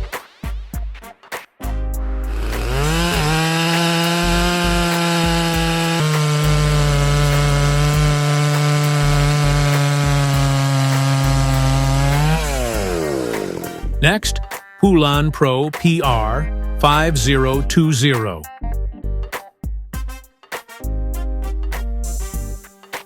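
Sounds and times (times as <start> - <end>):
chainsaw cutting wood: 2.3 - 13.9.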